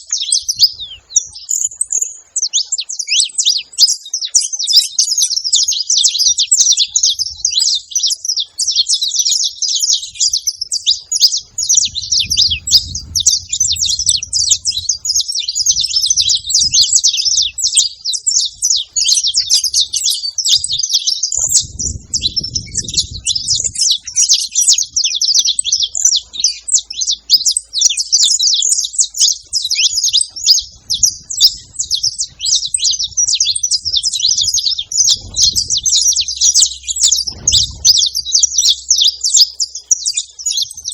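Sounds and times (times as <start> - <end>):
finches chirping and singing: 0.0 - 40.9
faint low rumbles: 10.0 - 20.8, 21.4 - 26.4, 29.6 - 39.7.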